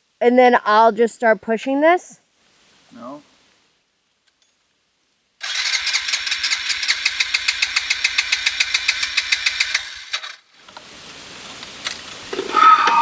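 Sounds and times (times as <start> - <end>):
motorbike electric starter cranking: 5.4 - 10.4.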